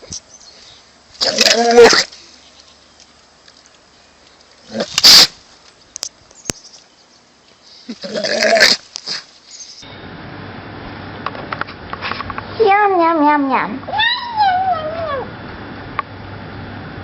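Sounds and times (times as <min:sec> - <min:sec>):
animal calling loudly: 0:13.9 - 0:15.3.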